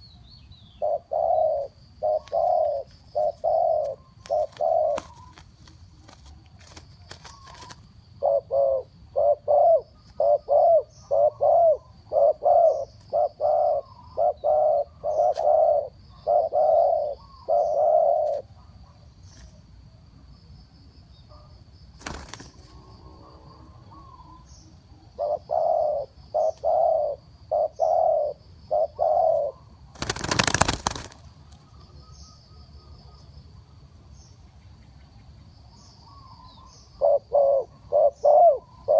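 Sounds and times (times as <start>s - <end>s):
dove cooing rapidly: 0.7s - 18.5s, 23.5s - 31.2s, 36.2s - 38.9s.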